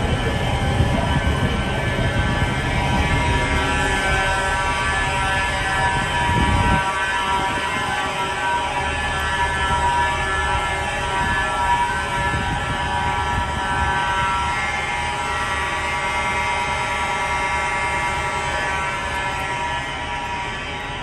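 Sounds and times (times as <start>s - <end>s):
low rumble: 0.0s - 16.0s
fire alarm horns buzzing: 0.0s - 21.0s.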